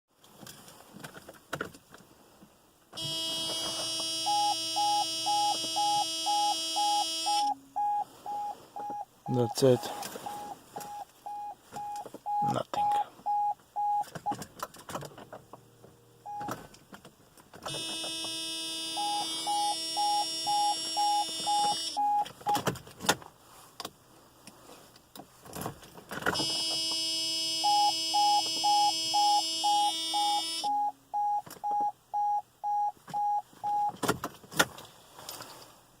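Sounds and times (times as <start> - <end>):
short warning beeps: 3.0 - 14.0, 17.7 - 22.6, 26.4 - 33.9.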